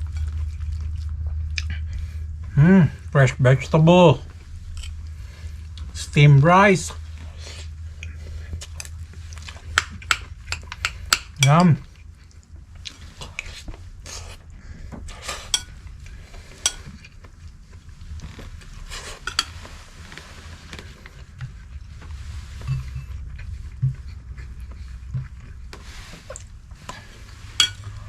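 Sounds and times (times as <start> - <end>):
cutlery scraping on a plate: 15.4 - 15.8, 18.9 - 19.6, 22.6 - 23.2, 27.6 - 27.9.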